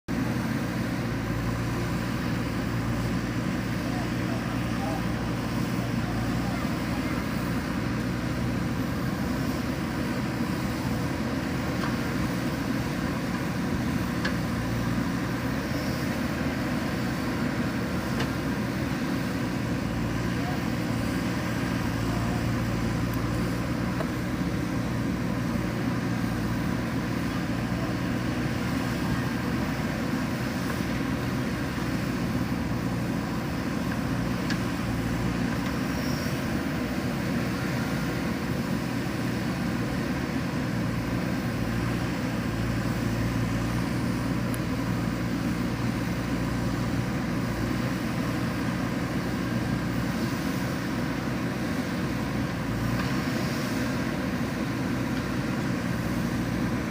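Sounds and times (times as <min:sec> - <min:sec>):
diesel engine running steadily: 0:00.0 - 0:56.9.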